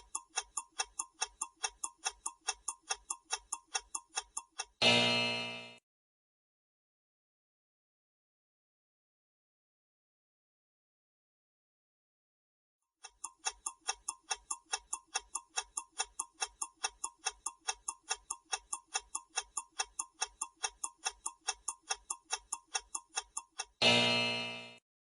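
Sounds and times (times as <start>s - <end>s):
clock ticking: 0.0s - 5.8s, 13.0s - 24.8s
ringing time-up tone: 4.8s - 5.8s, 23.8s - 24.8s.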